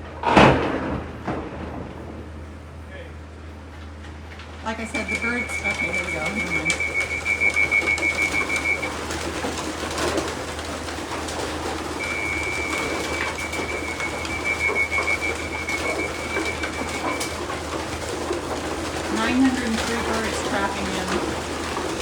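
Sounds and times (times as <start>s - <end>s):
pigeons cooing: 4.7s - 22.0s.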